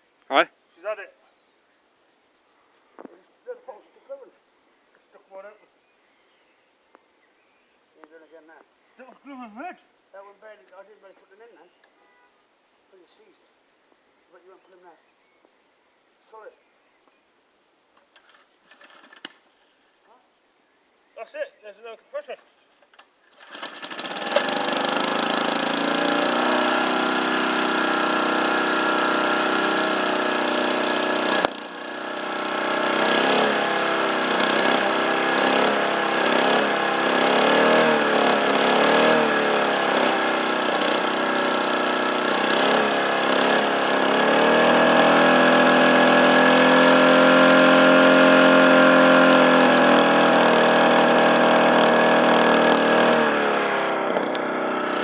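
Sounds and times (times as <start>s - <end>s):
lawn mower engine running: 23.2s - 55.0s.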